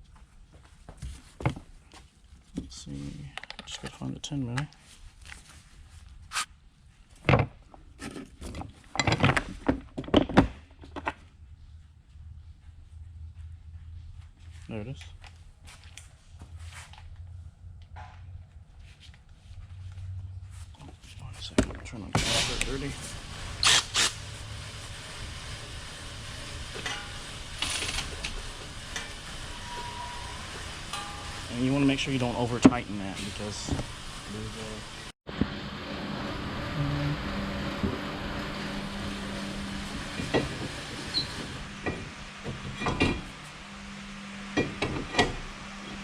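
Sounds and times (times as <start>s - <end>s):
workshop background noise: 17.9s - 46.0s.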